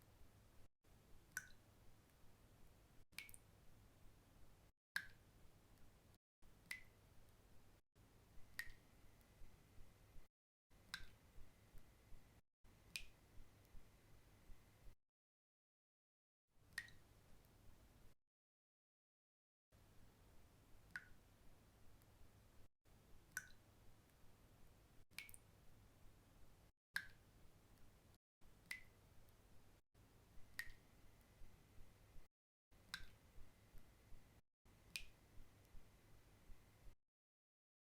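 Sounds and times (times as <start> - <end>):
water drops plinking into water: 1.3 - 1.7, 3.2 - 3.5, 5.0 - 5.2, 6.6 - 7.0, 8.4 - 8.9, 10.9 - 11.9, 12.9 - 13.9, 16.7 - 17.0, 23.3 - 23.7, 25.2 - 25.5, 27.0 - 27.2, 28.6 - 29.0, 30.4 - 30.9, 32.8 - 33.9, 34.9 - 35.8
faint drips: 1.3 - 2.3, 3.2 - 3.5, 6.6 - 7.4, 10.8 - 12.3, 23.3 - 24.3, 30.4 - 34.3.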